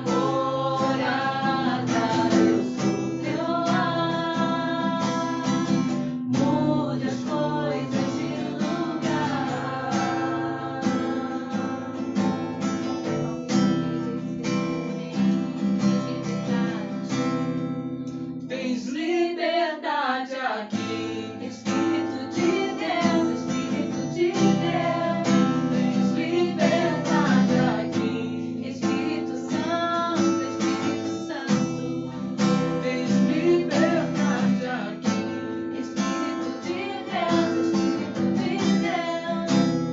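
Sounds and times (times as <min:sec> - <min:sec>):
person singing: 0:00.0 - 0:17.4, 0:18.5 - 0:39.9
strummed acoustic guitar: 0:00.0 - 0:19.4, 0:20.3 - 0:39.9.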